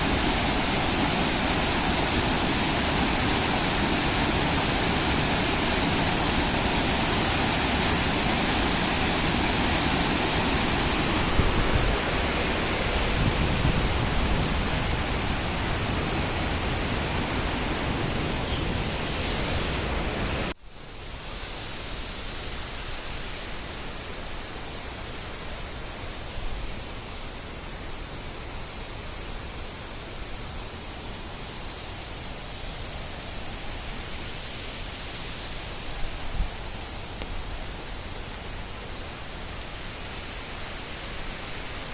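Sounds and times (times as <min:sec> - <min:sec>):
fast-flowing water rushing: 0:00.0 - 0:20.6, 0:29.3 - 0:41.9.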